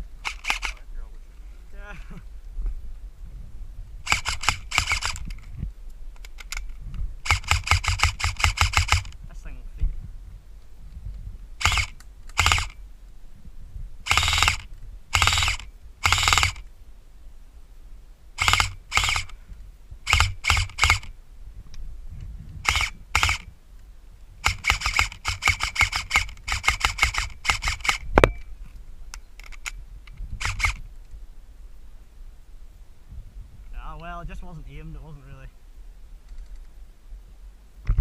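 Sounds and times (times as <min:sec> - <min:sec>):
airsoft rifle shots: 0:00.2 - 0:00.8, 0:04.1 - 0:05.3, 0:07.2 - 0:09.2, 0:11.6 - 0:12.8, 0:14.1 - 0:16.6, 0:18.4 - 0:19.3, 0:20.1 - 0:21.1, 0:22.6 - 0:23.5, 0:24.4 - 0:28.5.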